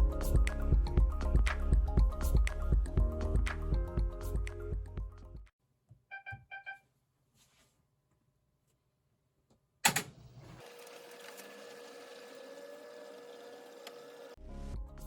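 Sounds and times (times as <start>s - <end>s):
washing machine beeps: 6.1s - 6.8s.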